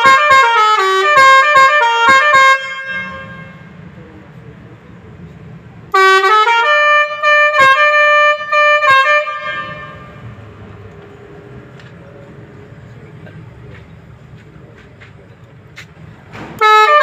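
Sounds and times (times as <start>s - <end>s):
bus horn playing a tune: 0.0s - 3.9s, 5.9s - 10.5s, 16.5s - 17.0s.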